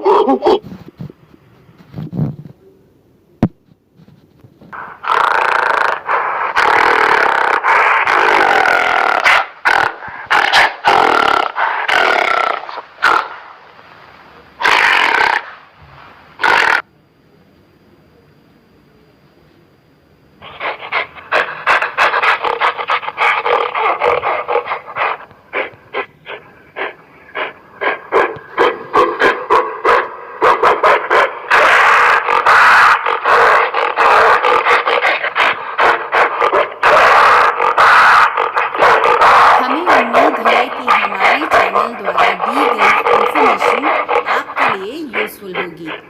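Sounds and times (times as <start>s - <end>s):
gorilla rough call: 4.8s - 13.4s, 14.6s - 15.6s, 16.4s - 16.9s, 31.5s - 46.0s
gorilla breathy calls: 39.3s - 46.0s.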